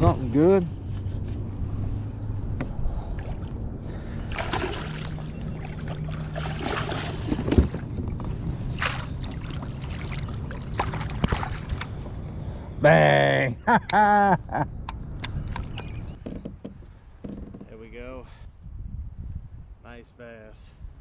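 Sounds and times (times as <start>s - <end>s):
water splashing and sloshing: 3.1s - 12.2s.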